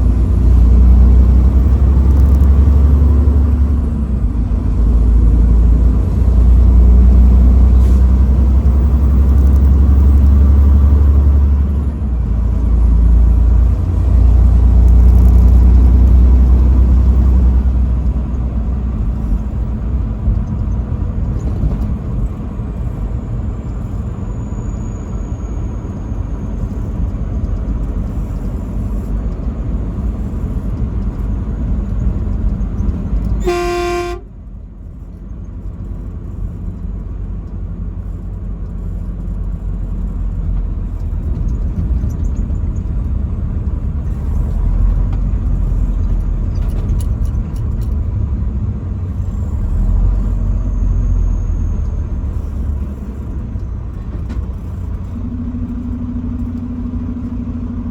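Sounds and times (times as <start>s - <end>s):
truck rumbling: 0.0s - 57.9s
truck horn blast: 33.3s - 34.4s.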